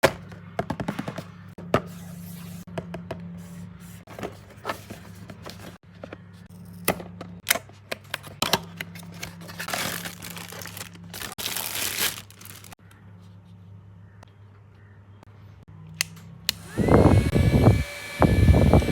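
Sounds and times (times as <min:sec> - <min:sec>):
packaging tearing and rustling: 0:08.9 - 0:12.8.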